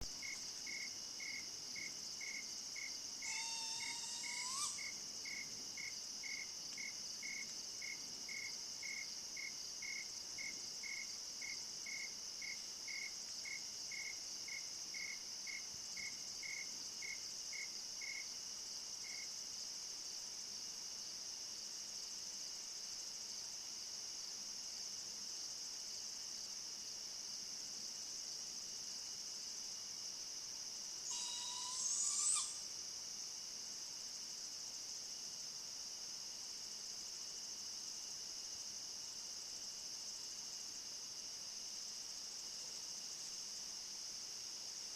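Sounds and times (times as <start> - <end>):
night insect chorus: 0.0 - 44.9
regular insect chirp: 0.0 - 44.9
animal call rising in pitch: 3.3 - 4.8.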